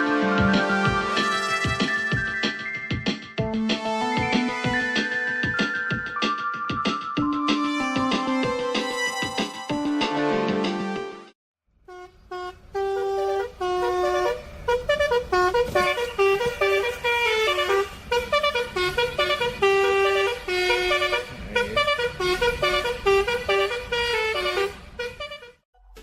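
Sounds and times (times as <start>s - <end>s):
multi-tone bus horn melody: 0.0s - 2.8s, 7.3s - 11.2s, 11.8s - 25.6s.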